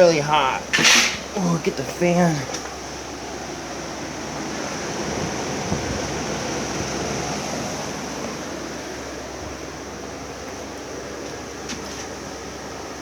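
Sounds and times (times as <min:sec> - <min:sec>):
electric fan running: 0:00.0 - 0:13.0.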